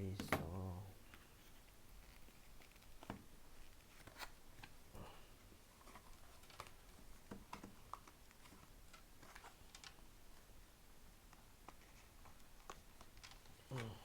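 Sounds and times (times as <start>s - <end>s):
hands tapping packaging: 5.8s - 10.0s.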